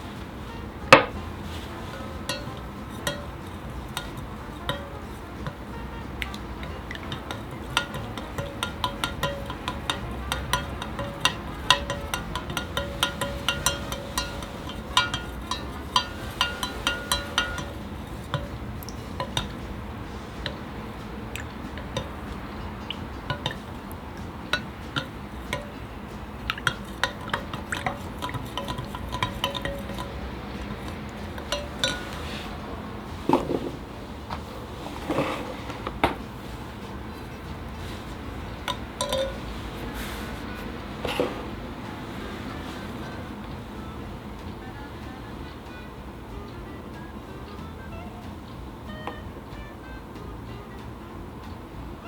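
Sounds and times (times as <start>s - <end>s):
utensil clinking against bowl: 0.8s - 41.6s
loud knock on bowl: 1.0s - 1.2s.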